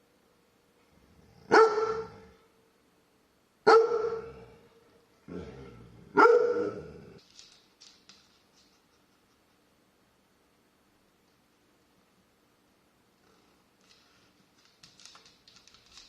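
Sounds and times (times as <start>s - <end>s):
dog barking: 1.5s - 2.4s, 3.6s - 4.5s, 6.1s - 7.1s.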